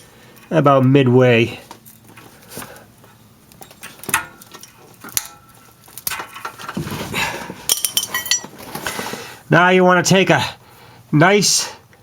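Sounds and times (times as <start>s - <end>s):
metal hand tools clinking: 7.7s - 8.5s.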